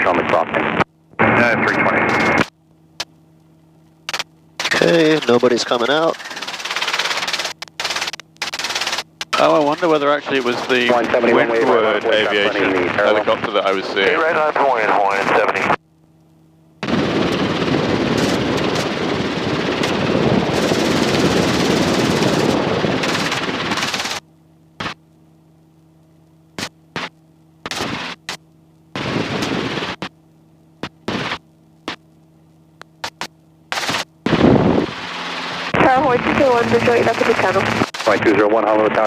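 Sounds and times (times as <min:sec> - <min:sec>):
radio static noise: 0:00.0 - 0:03.1, 0:04.0 - 0:15.8, 0:16.8 - 0:24.2, 0:24.8 - 0:25.0, 0:26.5 - 0:30.2, 0:30.8 - 0:32.2, 0:32.8 - 0:39.0
radio squelch crackling bursts: 0:00.0 - 0:03.2, 0:04.0 - 0:15.8, 0:16.8 - 0:24.2, 0:24.8 - 0:25.1, 0:25.8 - 0:30.2, 0:30.8 - 0:39.0
faint steady hum: 0:00.0 - 0:39.0.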